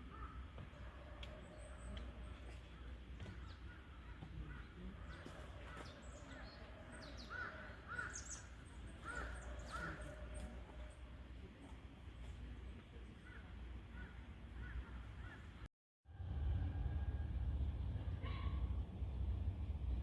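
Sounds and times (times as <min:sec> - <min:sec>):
crows cawing: 0:00.0 - 0:00.6, 0:02.8 - 0:06.4, 0:07.2 - 0:10.6, 0:13.2 - 0:15.7
small birds chirping: 0:00.0 - 0:15.7.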